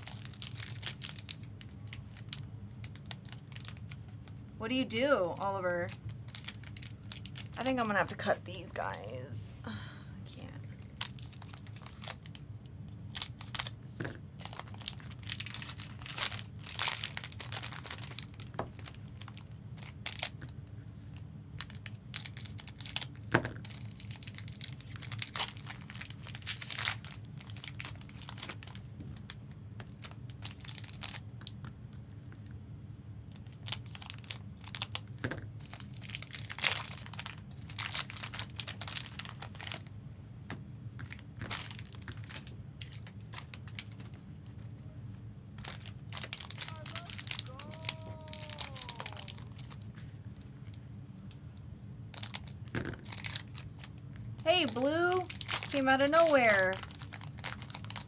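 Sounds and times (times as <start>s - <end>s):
foil wrappers crinkling and tearing: 0.0s - 4.4s, 5.9s - 7.6s, 10.9s - 12.4s, 13.0s - 13.8s, 14.4s - 20.4s, 21.0s - 31.6s, 33.3s - 39.9s, 41.0s - 44.7s, 45.6s - 50.0s, 52.1s - 58.0s.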